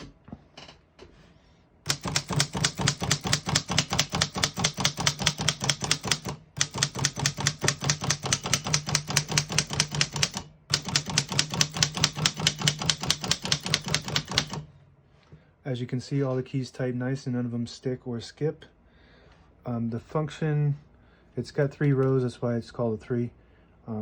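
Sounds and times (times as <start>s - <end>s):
typewriter typing: 1.8s - 14.7s.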